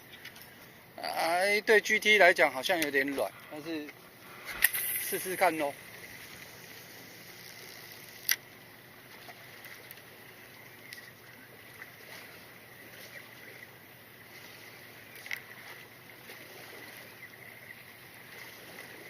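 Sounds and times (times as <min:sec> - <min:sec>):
wind and sea hiss: 0:00.0 - 0:19.0
faint ticks: 0:02.6 - 0:13.7, 0:14.3 - 0:15.9.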